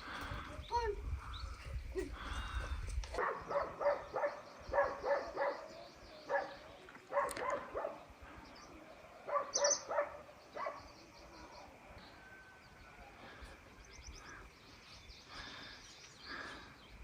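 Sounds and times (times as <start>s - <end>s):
dog barking: 3.2s - 8.1s, 9.2s - 10.9s
faint bird chirps: 3.4s - 17.0s.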